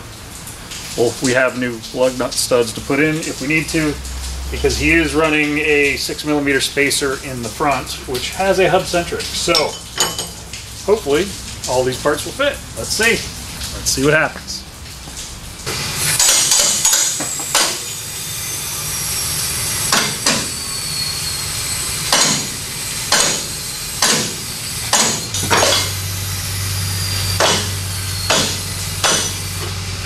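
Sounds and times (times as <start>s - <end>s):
pneumatic impact wrench bursts: 15.7s - 30.0s.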